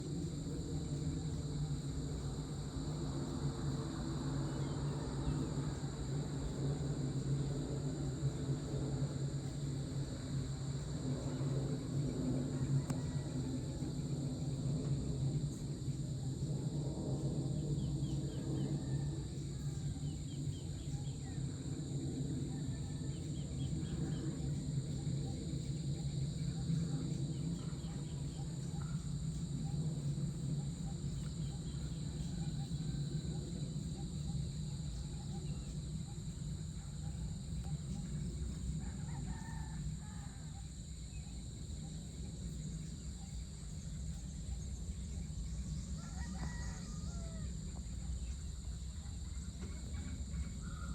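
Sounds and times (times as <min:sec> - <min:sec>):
low steady hum: 0:00.0 - 0:50.9
roosters crowing: 0:12.4 - 0:14.1, 0:38.8 - 0:40.7, 0:45.8 - 0:48.1.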